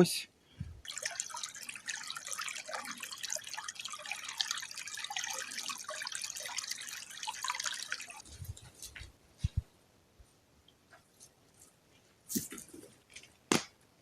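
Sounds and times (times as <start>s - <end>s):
stream trickling and gurgling: 0.7s - 9.0s.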